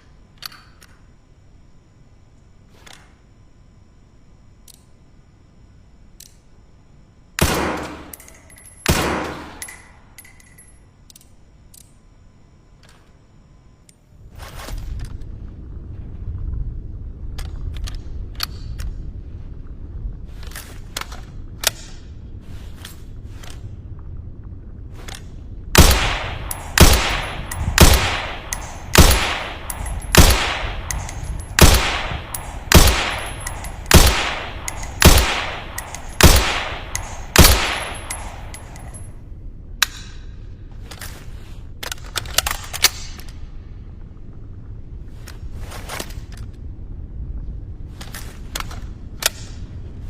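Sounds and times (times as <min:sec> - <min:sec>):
suppressed rifle shots echoing: 0:25.8 - 0:39.0.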